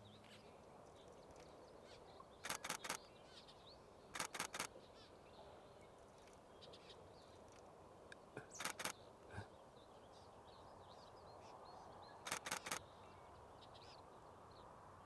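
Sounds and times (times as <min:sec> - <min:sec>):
faint bird chirps: 0:00.0 - 0:07.6, 0:08.4 - 0:10.3, 0:10.9 - 0:14.1
camera shutter clicking: 0:02.4 - 0:03.0, 0:04.2 - 0:04.7, 0:08.5 - 0:08.9, 0:12.3 - 0:12.8.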